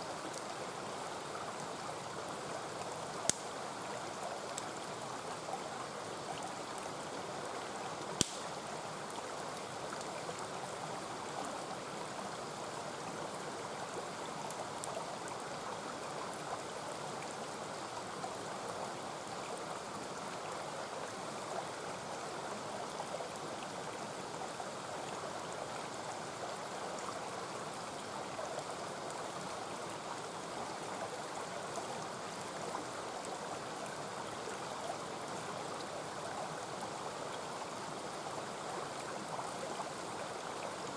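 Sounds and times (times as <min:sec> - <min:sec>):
campfire popping and crackling: 0:03.3 - 0:03.5, 0:08.2 - 0:08.6.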